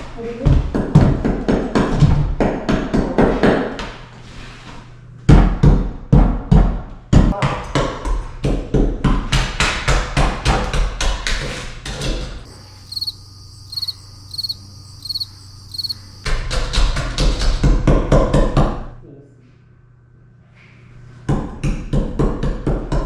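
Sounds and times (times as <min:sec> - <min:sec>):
high-pitched chirp: 0:12.5 - 0:16.3.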